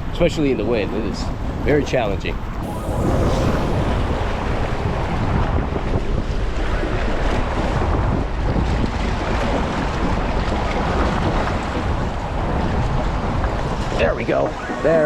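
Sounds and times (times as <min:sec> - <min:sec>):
strong wind buffeting microphone: 0:02.4 - 0:09.0.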